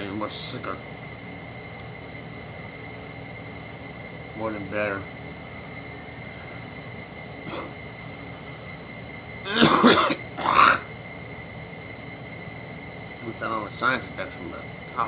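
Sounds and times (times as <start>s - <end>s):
person coughing: 7.5s - 7.8s, 9.5s - 10.9s.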